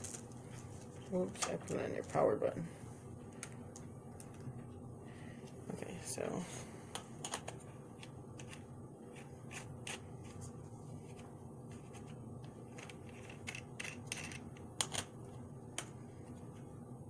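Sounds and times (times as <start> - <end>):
plastic parts clicking and scraping: 12.7 - 15.1.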